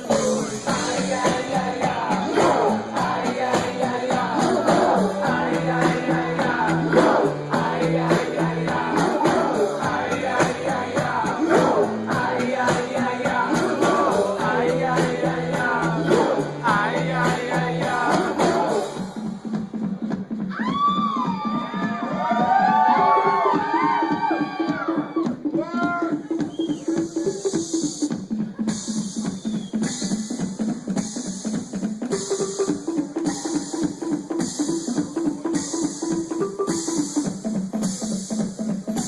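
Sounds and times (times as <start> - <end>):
lead vocals: 0.0 - 30.4
live band playing: 0.0 - 39.0.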